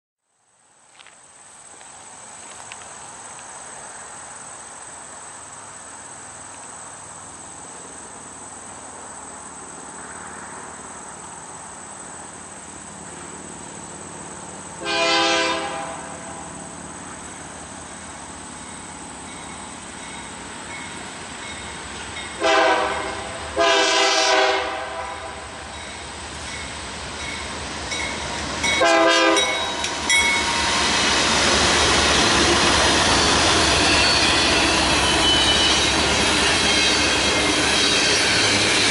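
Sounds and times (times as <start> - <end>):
oncoming train rumble: 8.0 - 38.9
locomotive air horn chord: 14.8 - 16.5, 22.4 - 25.6, 28.8 - 29.9.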